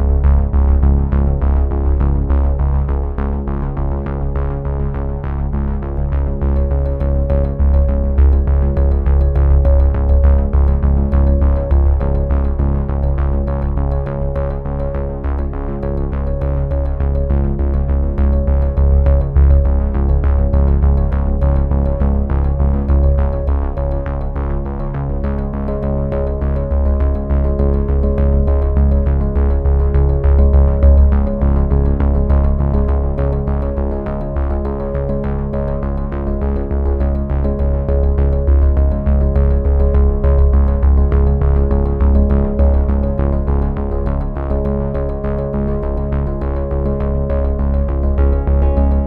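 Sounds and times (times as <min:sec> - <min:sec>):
synthesizer tune with beat: 0:48.2 - 0:49.0.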